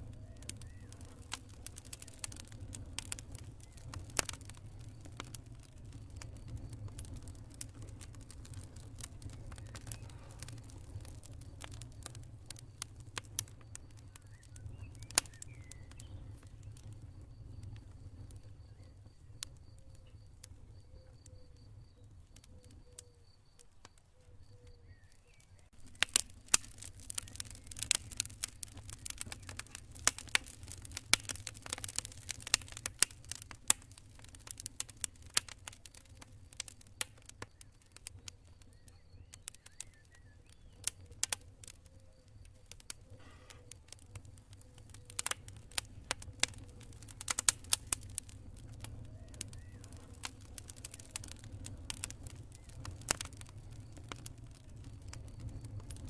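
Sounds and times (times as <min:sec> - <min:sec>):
campfire crackling and popping: 0:00.0 - 0:56.0
crickets chirping: 0:09.4 - 0:30.0.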